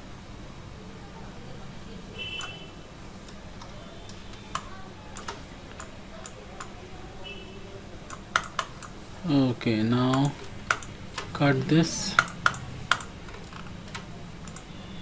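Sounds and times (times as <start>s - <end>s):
faint steady hum: 0.0s - 15.0s
mouse and keyboard clicks: 3.2s - 6.8s, 8.1s - 9.0s, 10.1s - 11.4s, 12.1s - 14.7s.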